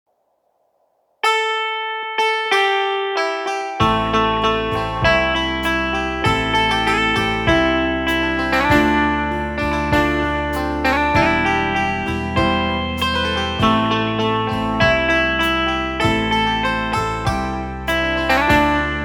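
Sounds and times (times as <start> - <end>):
plucked guitar-like melody: 1.2 - 19.0
low bass part: 3.8 - 19.0.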